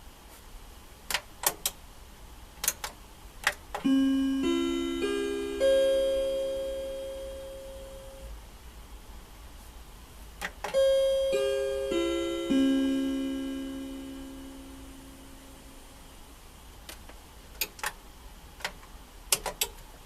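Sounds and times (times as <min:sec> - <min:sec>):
rising four-note paging chime: 0:03.8 - 0:08.3, 0:10.7 - 0:16.0.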